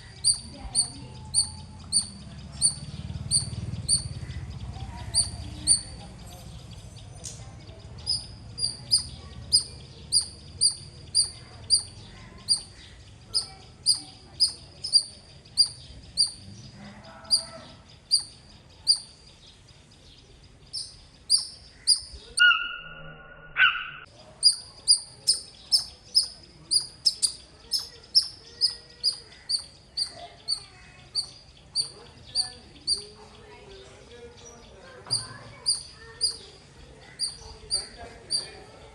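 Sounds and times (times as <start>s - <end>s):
squirrel chirping: 0.0s - 19.7s, 20.6s - 22.8s, 23.6s - 33.6s, 34.7s - 38.9s.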